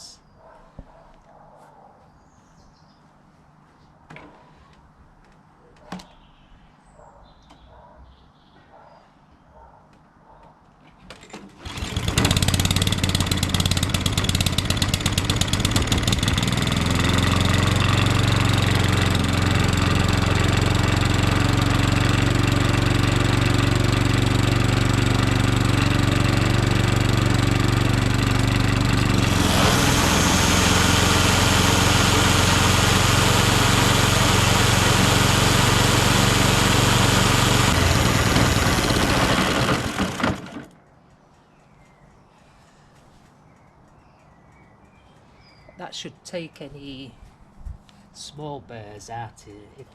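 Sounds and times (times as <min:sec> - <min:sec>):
mower blades grinding: 0:10.9 - 0:40.8.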